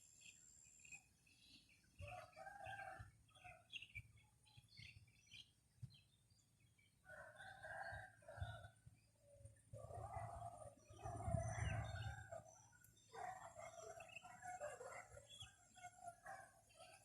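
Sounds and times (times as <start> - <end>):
small birds chirping: 0.0 - 17.0
distant rooster crowing: 2.0 - 3.8, 7.1 - 8.8.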